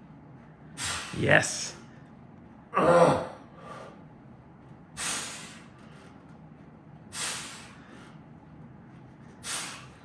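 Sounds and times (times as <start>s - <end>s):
man exhaling hard with a hiss: 0.8s - 1.2s, 5.0s - 5.7s, 7.1s - 7.8s, 9.4s - 10.0s.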